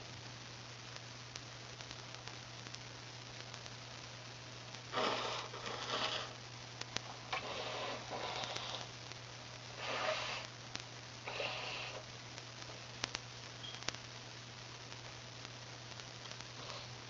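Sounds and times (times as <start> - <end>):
person sniffing: 9.8 - 10.5.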